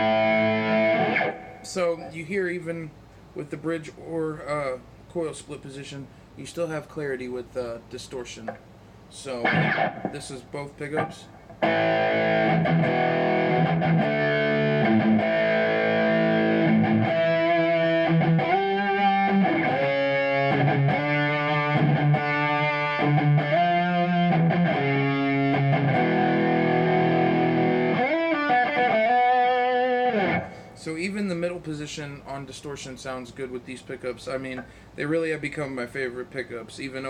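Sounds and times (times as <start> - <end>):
distorted electric guitar: 0.0 - 1.7, 9.4 - 10.3, 11.0 - 30.8.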